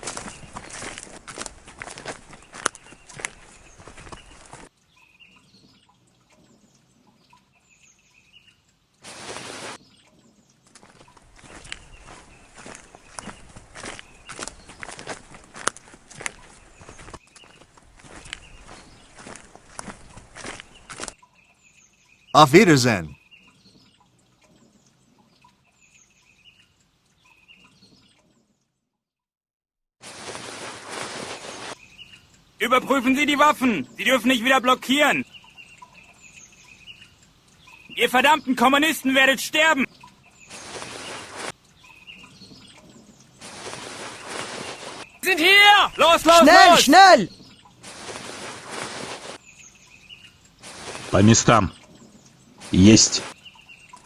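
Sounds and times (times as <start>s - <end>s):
faint outdoor ambience: 10.2s - 23.2s, 44.8s - 47.8s, 49.4s - 54.0s.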